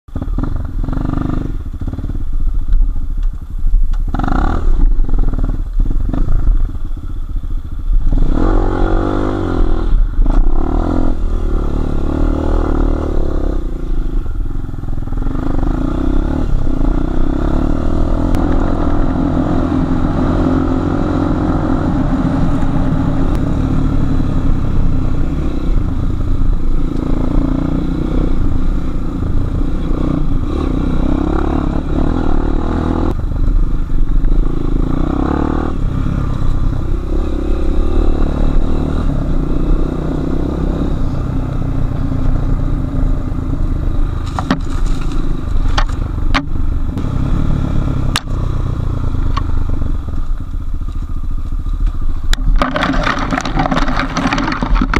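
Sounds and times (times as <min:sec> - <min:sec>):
motorcycle engine revving: 0:00.1 - 0:02.5, 0:04.1 - 0:51.5, 0:52.1 - 0:54.9
motorcycle knocks and rattles: 0:44.2 - 0:46.7, 0:50.2 - 0:54.9.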